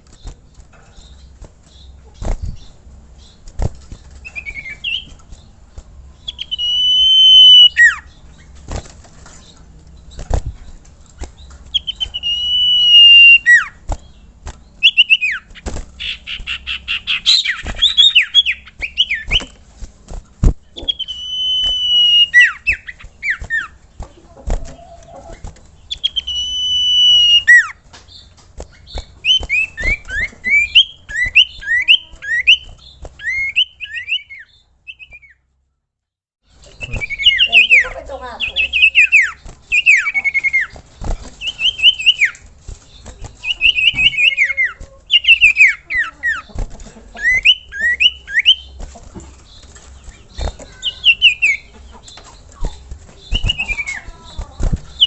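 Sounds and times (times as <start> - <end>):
bird long drawn whistles: 6.5 - 8.0, 12.2 - 13.7, 21.0 - 22.7, 26.1 - 27.7
bird chattering notes: 36.6 - 40.8, 43.0 - 55.0.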